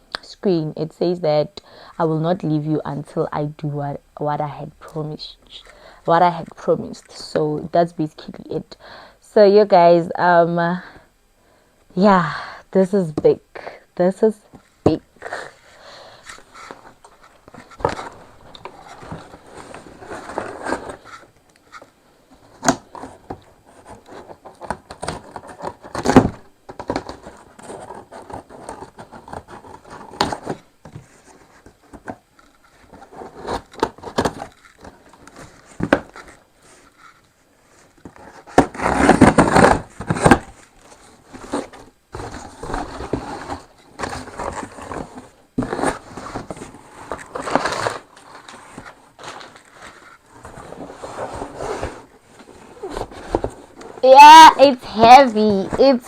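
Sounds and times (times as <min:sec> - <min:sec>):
packaging scraping and crinkling: 0:15.2 - 0:54.0
packaging rustling: 0:16.1 - 0:21.4, 0:22.4 - 0:54.3.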